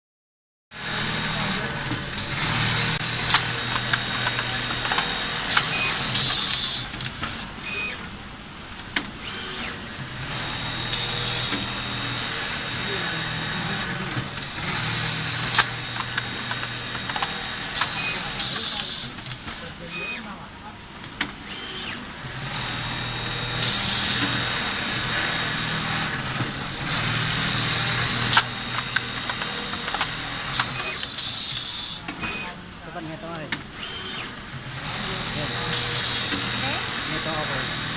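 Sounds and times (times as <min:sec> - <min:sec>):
sharp machine clicks: 0:00.8 - 0:08.2, 0:08.8 - 0:20.4, 0:21.2 - 0:37.9
sewing machine hum: 0:00.8 - 0:37.9
air hiss bursts: 0:02.2 - 0:07.5, 0:10.9 - 0:12.2, 0:14.4 - 0:16.2, 0:17.1 - 0:19.7, 0:23.6 - 0:24.5, 0:29.6 - 0:32.4, 0:35.6 - 0:36.5
compressed air hiss: 0:05.5 - 0:07.5, 0:10.9 - 0:11.7, 0:17.8 - 0:19.7, 0:23.6 - 0:24.4, 0:30.5 - 0:32.0, 0:35.7 - 0:36.4.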